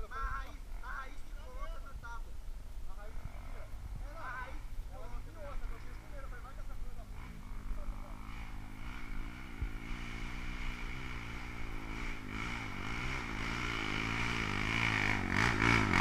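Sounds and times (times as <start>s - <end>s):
motorcycle engine revving: 2.9s - 4.1s, 5.0s - 16.0s.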